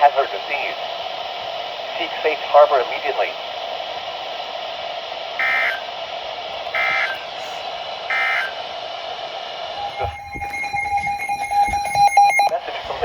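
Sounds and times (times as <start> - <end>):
radio hiss: 0.0 - 13.0
steady electronic alert tone: 9.8 - 12.6
warbling digital data tones: 9.8 - 13.0.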